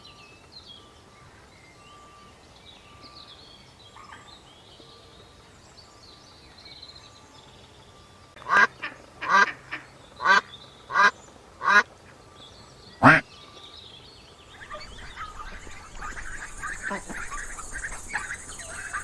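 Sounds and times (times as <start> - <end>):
duck quacking: 8.4 - 11.8, 13.0 - 13.2, 14.6 - 19.0.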